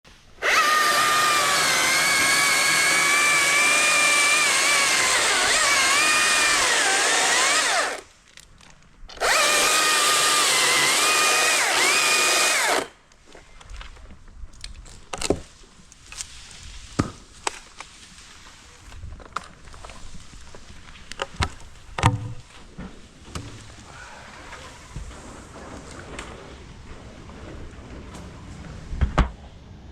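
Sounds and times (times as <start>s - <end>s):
chainsaw cutting at full throttle: 0.4s - 8.0s, 9.2s - 12.9s.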